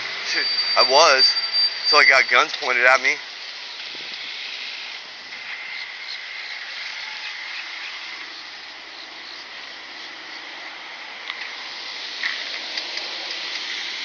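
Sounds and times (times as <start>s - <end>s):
insects trilling: 0.4s - 11.0s.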